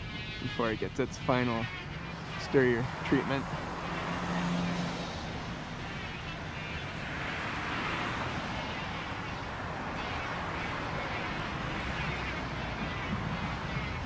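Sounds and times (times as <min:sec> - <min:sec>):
street traffic: 0:00.0 - 0:14.0
vehicle passing: 0:00.0 - 0:14.0.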